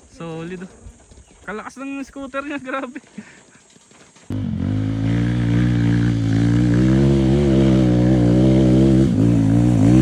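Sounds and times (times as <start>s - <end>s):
motorcycle engine running: 4.3s - 10.0s.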